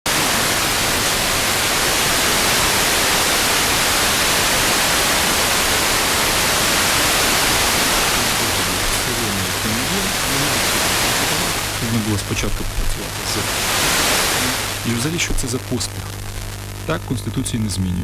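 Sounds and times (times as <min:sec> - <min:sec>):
radio static hiss: 0:00.0 - 0:18.0
faint low hum: 0:06.6 - 0:18.0
faint voice on radio: 0:08.0 - 0:13.7, 0:14.4 - 0:16.2, 0:16.9 - 0:18.0.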